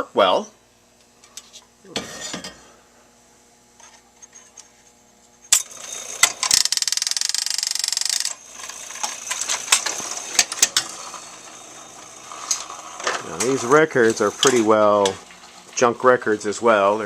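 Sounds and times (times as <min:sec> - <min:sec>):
fast mechanical rattle: 0:05.5 - 0:15.9.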